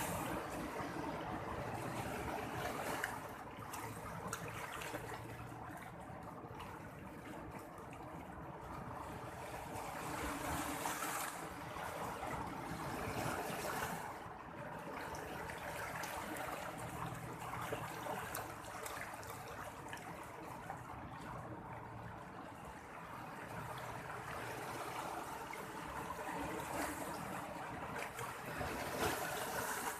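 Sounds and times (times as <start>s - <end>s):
sea water lapping: 0.0s - 29.9s.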